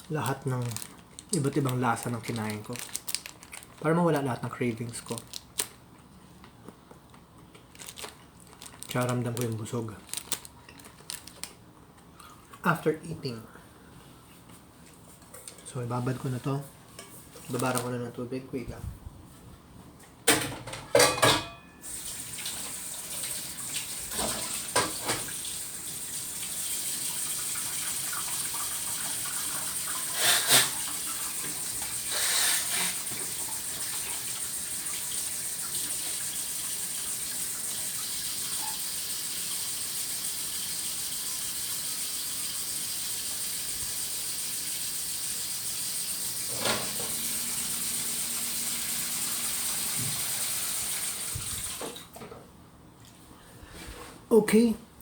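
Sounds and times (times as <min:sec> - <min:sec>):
tap water running into sink: 0:21.9 - 0:32.0, 0:32.8 - 0:52.0.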